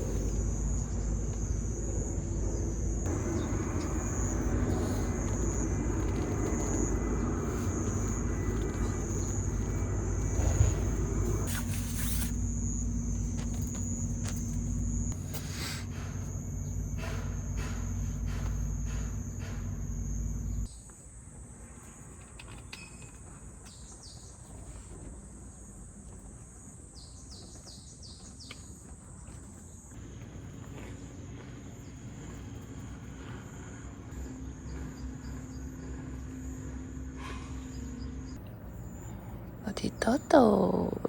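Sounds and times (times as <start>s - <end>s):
low rumble: 0.0s - 15.3s
insects droning: 0.0s - 41.0s.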